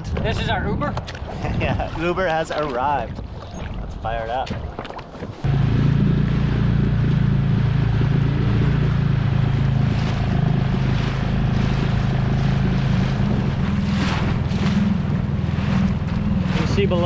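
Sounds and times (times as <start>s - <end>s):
outboard motor running: 5.1s - 17.0s.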